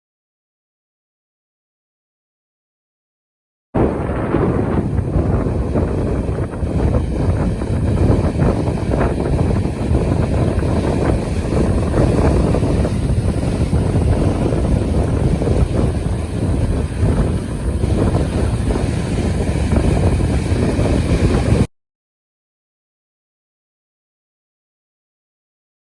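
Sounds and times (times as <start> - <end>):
wind buffeting microphone: 3.8 - 21.7.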